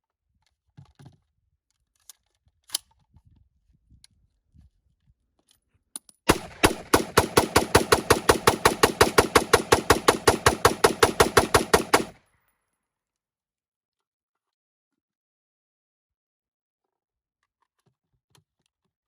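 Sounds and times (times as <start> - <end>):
rapid gunshots: 6.3 - 12.2.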